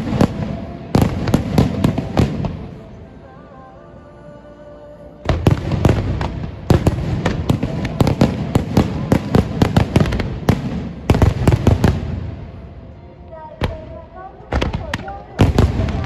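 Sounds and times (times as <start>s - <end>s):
fireworks barrage of sharp bangs: 0.0s - 2.8s, 5.2s - 12.5s, 14.5s - 16.0s.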